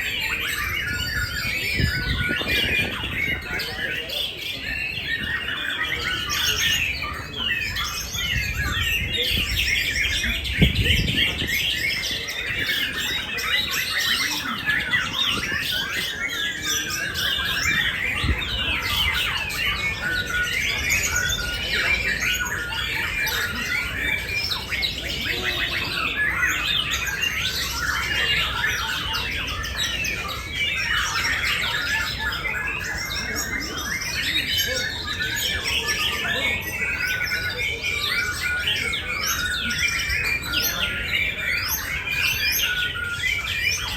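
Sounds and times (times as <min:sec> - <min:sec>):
songbirds chirping and trilling: 0:00.0 - 0:43.9.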